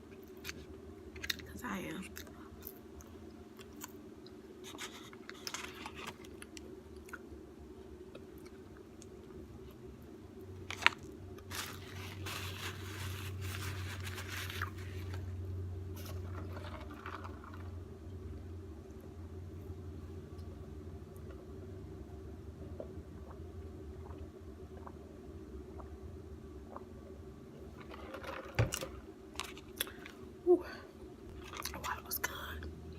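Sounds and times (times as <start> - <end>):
steady low hum: 0.0 - 32.9.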